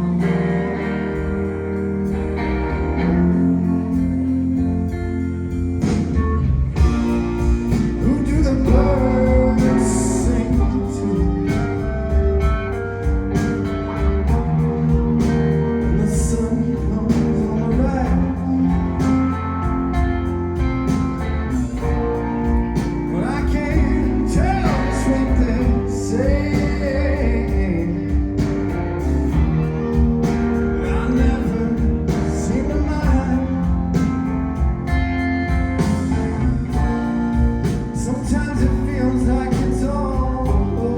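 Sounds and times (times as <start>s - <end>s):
live band playing: 0.0s - 40.9s
man singing: 6.8s - 20.0s, 23.1s - 35.0s, 35.8s - 40.9s.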